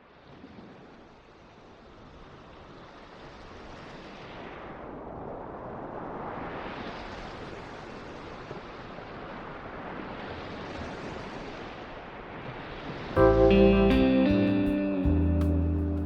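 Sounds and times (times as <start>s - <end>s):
surf washing over rocks: 0.2s - 13.5s
guitar music: 13.2s - 16.0s.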